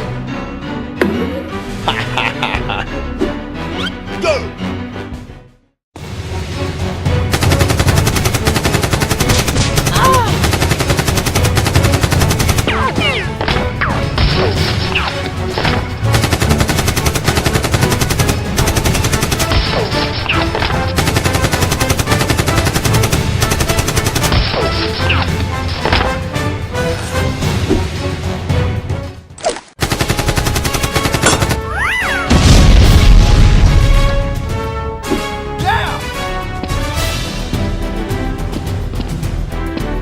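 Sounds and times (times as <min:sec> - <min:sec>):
automatic gunfire: 0:07.3 - 0:12.8, 0:16.1 - 0:20.0, 0:20.9 - 0:24.9, 0:29.8 - 0:31.6.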